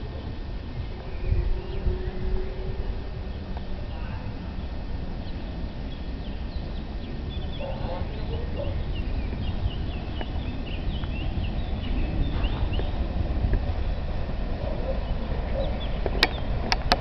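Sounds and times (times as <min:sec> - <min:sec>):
small birds chirping: 0:00.0 - 0:17.0
steady low rumble: 0:00.0 - 0:17.0.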